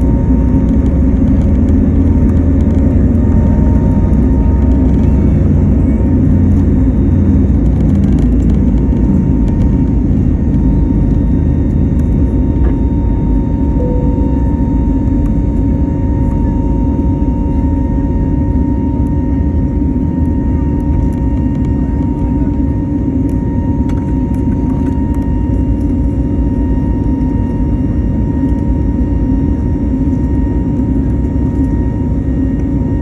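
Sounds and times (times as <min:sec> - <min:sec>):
airplane cabin engine rumble: 0:00.0 - 0:33.0
engine whine: 0:00.0 - 0:33.0.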